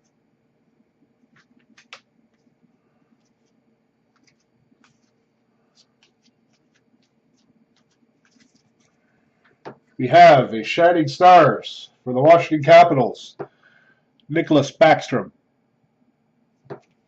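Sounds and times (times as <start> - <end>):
trading cards being flipped: 1.3 - 2.5, 3.2 - 9.8.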